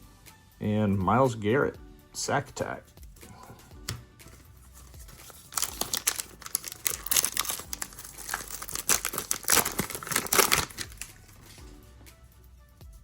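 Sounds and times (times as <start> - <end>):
foil wrapper tearing and crinkling: 4.6 - 11.6.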